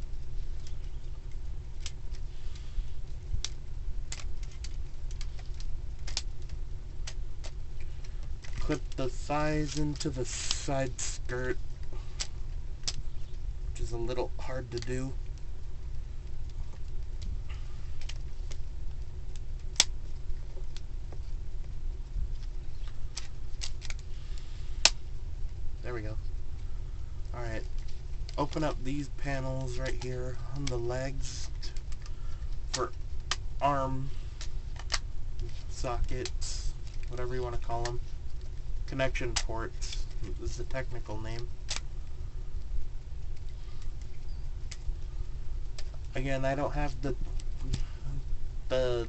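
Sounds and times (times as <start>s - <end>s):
low steady hum: 0.0s - 49.0s
plastic parts clicking and scraping: 0.6s - 10.7s.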